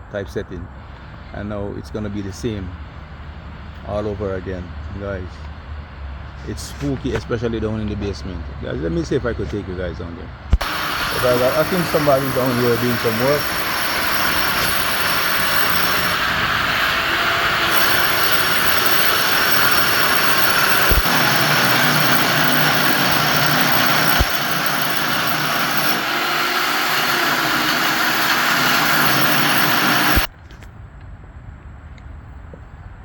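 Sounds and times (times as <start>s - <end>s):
machine running with hiss and hum: 10.6s - 30.3s.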